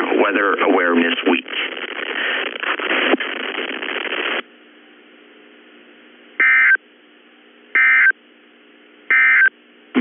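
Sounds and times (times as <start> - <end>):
loud static hiss: 0.0 - 6.8.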